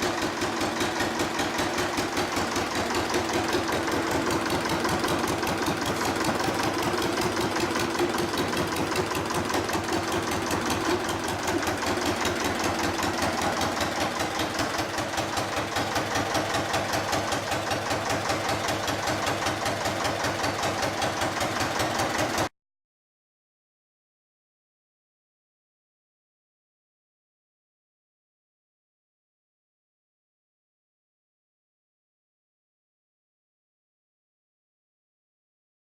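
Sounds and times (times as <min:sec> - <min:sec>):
diesel engine running: 0:00.0 - 0:22.5.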